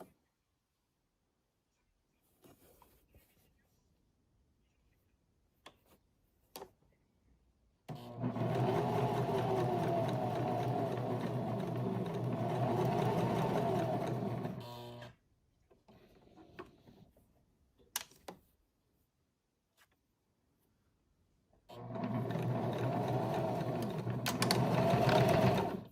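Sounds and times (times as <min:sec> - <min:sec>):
electric sewing machine stitching: 0:07.9 - 0:15.2, 0:21.7 - 0:25.9.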